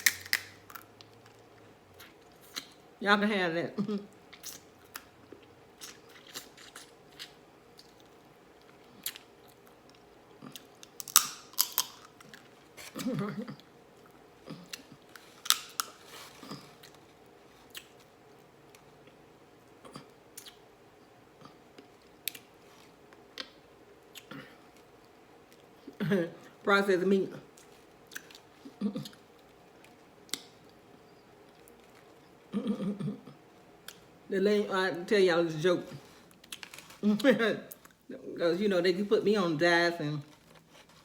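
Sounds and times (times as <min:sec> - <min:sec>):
person chewing food: 0:04.1 - 0:20.7.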